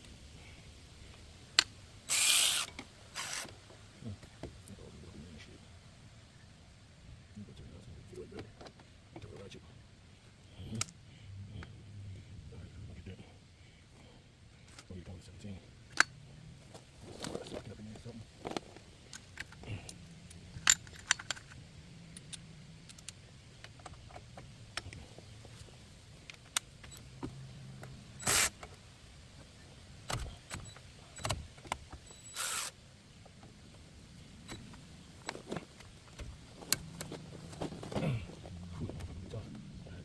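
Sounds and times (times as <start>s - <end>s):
short rasping bursts: 2.1s - 3.5s, 28.2s - 28.6s, 32.3s - 32.7s.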